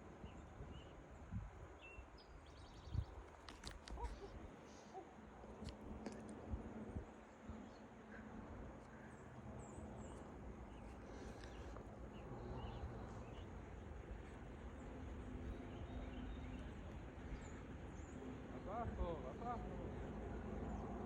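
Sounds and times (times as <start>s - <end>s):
wind rumble on microphone: 0.0s - 4.6s, 5.6s - 7.8s.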